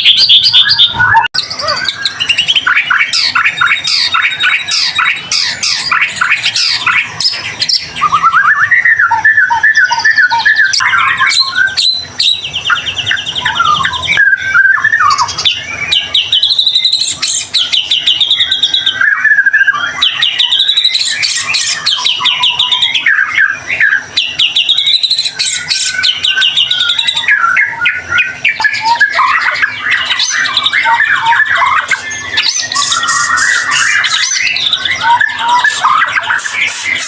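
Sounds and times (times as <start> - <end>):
bird singing whistles and trills: 0.0 - 37.0.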